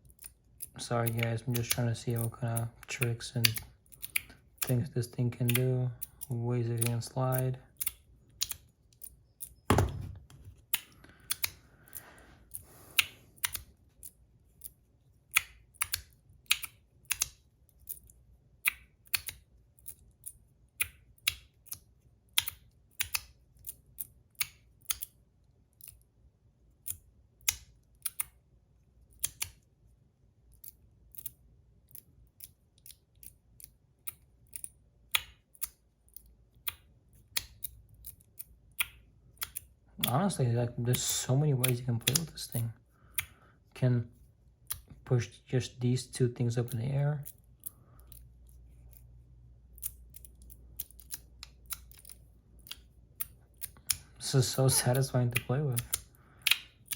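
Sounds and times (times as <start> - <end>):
metal fidget pieces clicking: 0.0 - 4.8, 5.4 - 9.6, 49.7 - 56.9.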